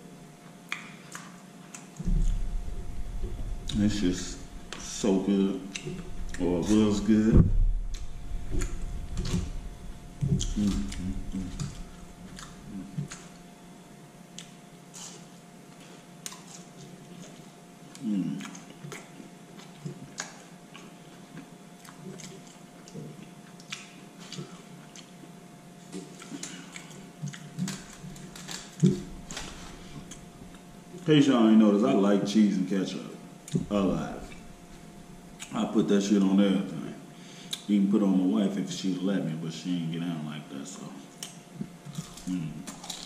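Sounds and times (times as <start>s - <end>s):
faint steady hum: 0.0s - 43.0s
wet mouth clicks and smacks chewing: 0.7s - 2.4s, 14.3s - 15.1s, 16.2s - 25.2s, 25.9s - 29.0s.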